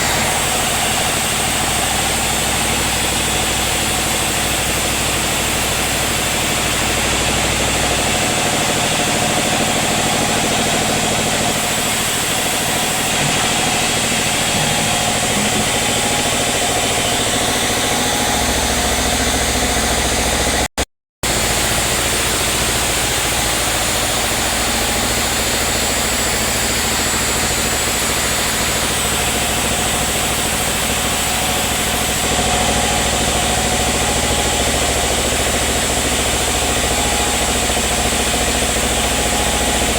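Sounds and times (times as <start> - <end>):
machinery hissing: 0.0 - 18.4
sawmill motor hum: 0.0 - 39.9.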